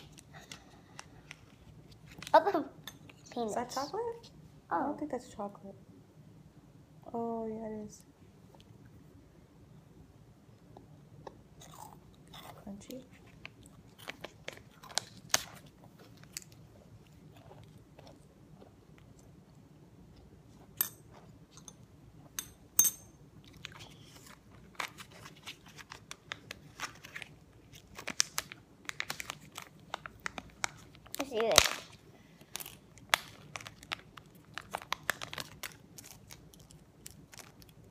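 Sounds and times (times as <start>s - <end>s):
child chewing crunchy chocolate: 0.0s - 2.3s, 10.6s - 22.4s, 23.4s - 31.4s, 32.0s - 37.9s.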